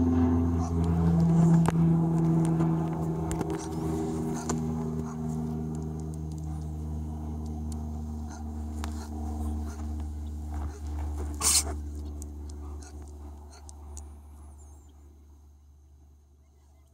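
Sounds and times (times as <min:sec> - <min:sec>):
steady low hum: 0:00.0 - 0:16.9
dog sneezing: 0:11.4 - 0:11.8.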